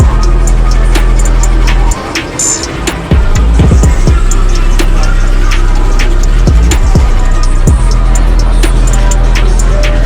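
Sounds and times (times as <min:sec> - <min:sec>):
sliding deep bass notes: 0:00.0 - 0:02.1, 0:03.0 - 0:10.0
hip-hop beat with hi-hats: 0:00.0 - 0:10.0.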